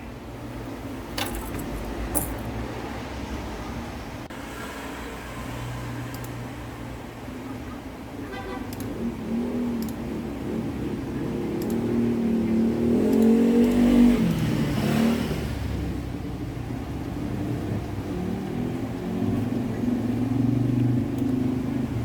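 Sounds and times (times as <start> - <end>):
vehicle engine passing by: 9.1 - 22.0.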